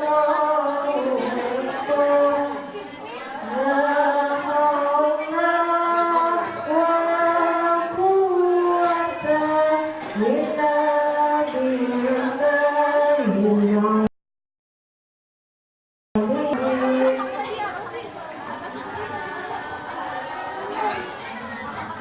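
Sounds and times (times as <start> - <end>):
high voice singing devotional song: 0.0 - 14.1, 16.2 - 22.0.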